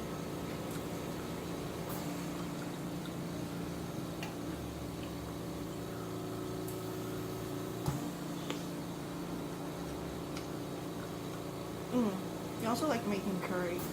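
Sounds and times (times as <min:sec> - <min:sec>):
low mechanical hum: 0:00.0 - 0:13.9.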